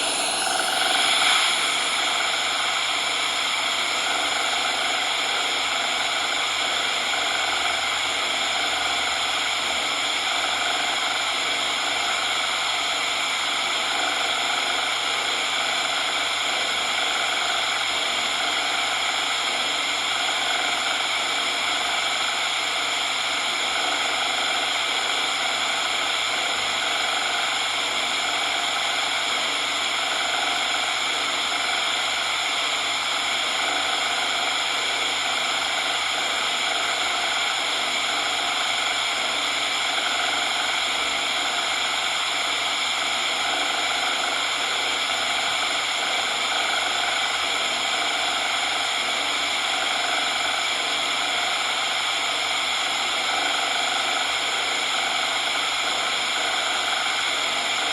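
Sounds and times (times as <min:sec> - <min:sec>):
high-pitched synthetic noise hiss: 0:00.0 - 0:05.0.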